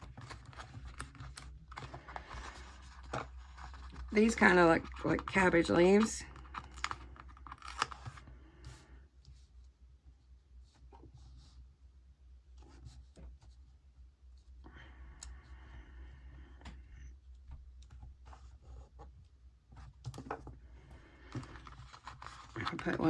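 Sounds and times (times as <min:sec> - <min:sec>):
stickers rustling: 0:21.3 - 0:23.0.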